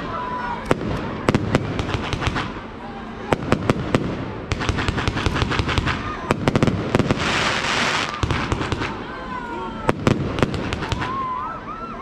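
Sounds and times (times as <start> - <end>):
fireworks bangs and cracks: 0.0 - 9.2, 9.8 - 11.5
firework hiss: 3.3 - 9.0.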